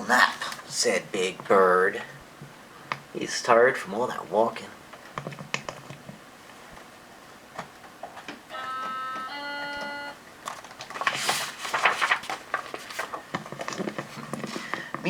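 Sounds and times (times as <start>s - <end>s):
cuckoo clock call: 8.5s - 10.2s
paper page rustling: 10.4s - 14.8s.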